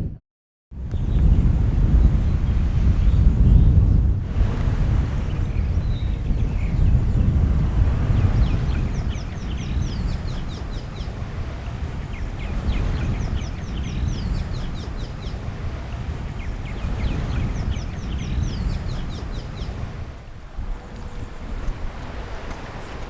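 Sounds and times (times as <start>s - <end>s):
birds chirping: 5.1s - 23.0s.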